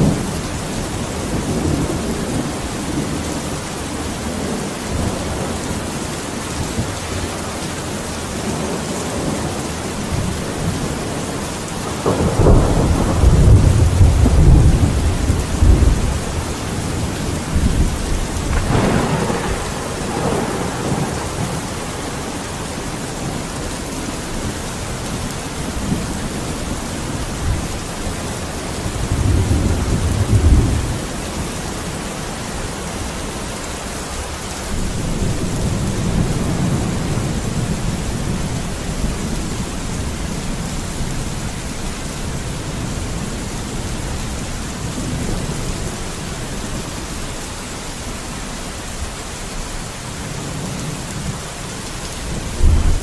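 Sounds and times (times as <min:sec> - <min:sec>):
steady rainfall: 0:00.0 - 0:53.0
thunder rumbling: 0:08.4 - 0:31.9, 0:52.2 - 0:53.0
thunder clap: 0:11.9 - 0:23.4, 0:52.4 - 0:53.0.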